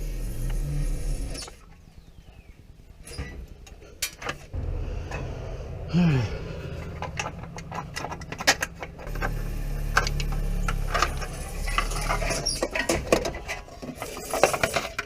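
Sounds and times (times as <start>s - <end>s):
low hum: 4.5s - 12.5s.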